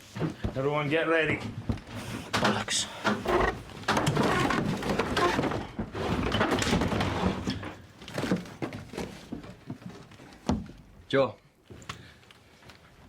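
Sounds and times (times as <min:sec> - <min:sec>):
thuds and clattering knocks: 0:01.2 - 0:10.9.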